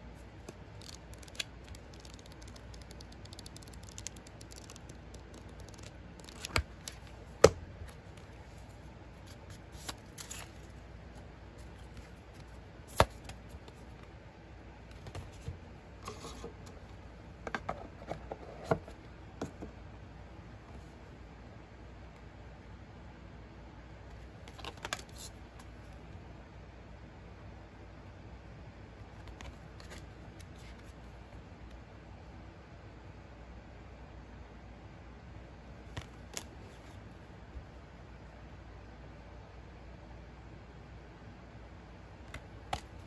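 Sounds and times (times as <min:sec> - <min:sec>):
card deck clicks and rustles: 0:00.2 - 0:14.0, 0:24.4 - 0:25.7, 0:29.2 - 0:31.0, 0:35.9 - 0:37.0, 0:42.3 - 0:43.0.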